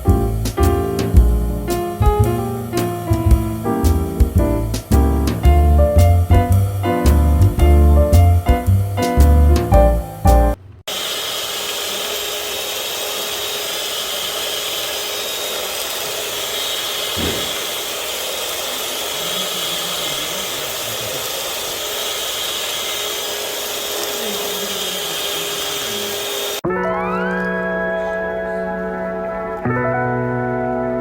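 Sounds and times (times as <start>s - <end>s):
background music: 0.0s - 10.6s, 26.6s - 31.0s
electric motor whirring: 10.9s - 26.6s.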